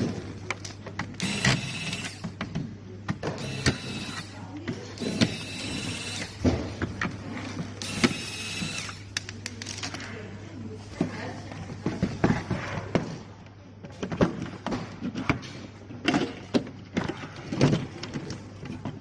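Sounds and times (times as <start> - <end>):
small electric motor whirring: 1.2 - 2.2, 3.4 - 4.3, 5.0 - 6.4, 7.8 - 9.0.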